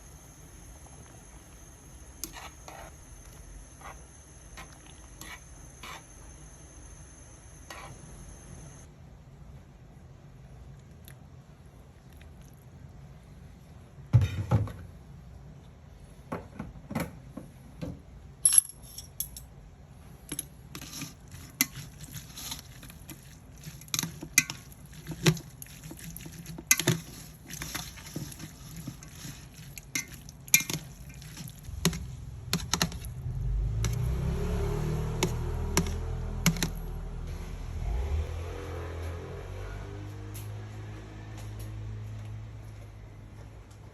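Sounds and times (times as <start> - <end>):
loud low sound: 31.7 - 40.0.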